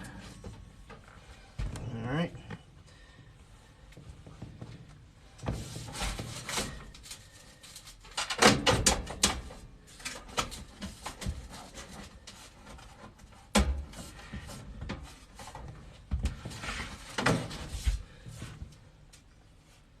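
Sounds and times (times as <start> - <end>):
sheet metal clicks and rattles: 8.0 - 10.8.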